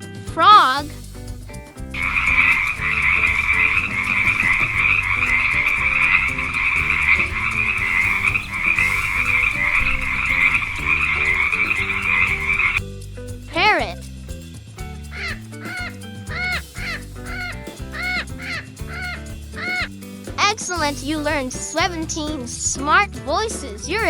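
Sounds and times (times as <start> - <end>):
frogs croaking: 2.0 - 12.8, 15.1 - 20.0.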